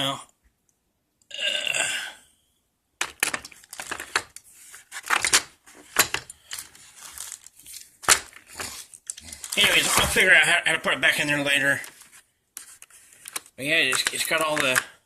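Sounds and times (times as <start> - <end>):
packaging crinkling and clicking: 3.0 - 10.3, 11.8 - 14.9.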